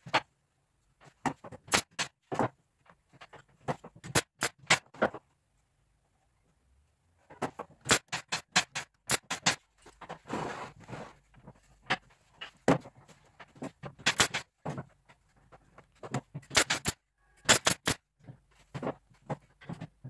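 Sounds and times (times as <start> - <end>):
sharp knocks and clicks: 7.3 - 10.0
scraping rustle: 9.8 - 12.4.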